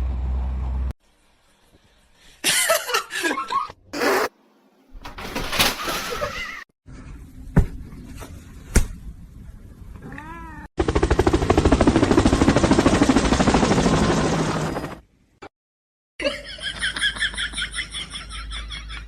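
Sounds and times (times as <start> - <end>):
cat meowing: 10.0 - 10.7.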